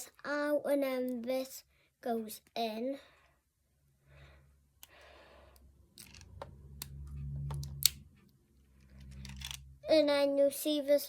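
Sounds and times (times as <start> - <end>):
soft breaths: 2.9 - 5.9
plastic toy parts clicking: 6.0 - 6.9, 9.0 - 9.6.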